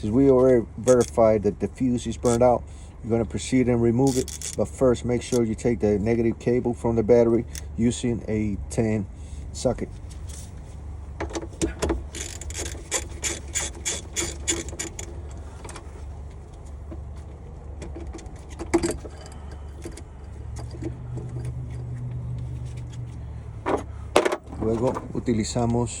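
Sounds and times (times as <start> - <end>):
steady low hum: 0.0 - 26.0
ratchet clicking: 0.8 - 1.2, 4.1 - 4.6, 12.0 - 15.4.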